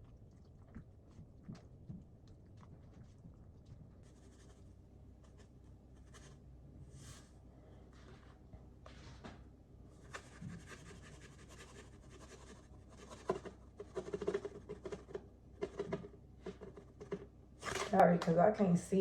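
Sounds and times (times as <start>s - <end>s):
utensil scraping in a bowl: 10.0s - 18.4s.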